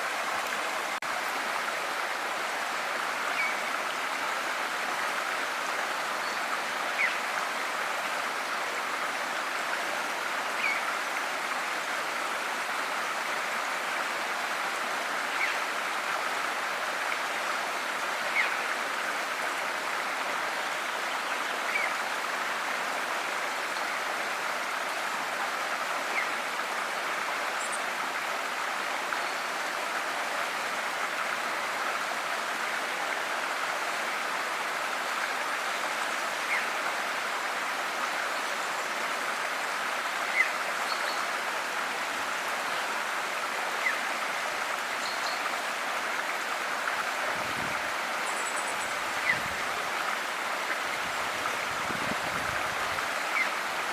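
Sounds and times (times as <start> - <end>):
river water flowing: 0.0 - 53.9.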